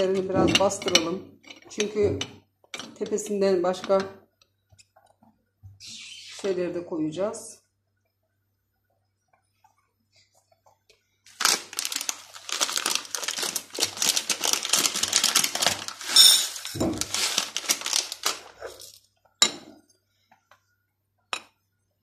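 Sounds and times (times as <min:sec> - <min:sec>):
crinkling and rustling: 0:10.2 - 0:19.1.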